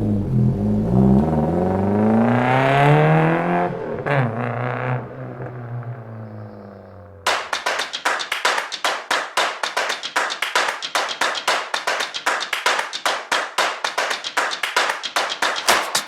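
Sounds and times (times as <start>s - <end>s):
sharp percussive claps: 7.3s - 16.0s.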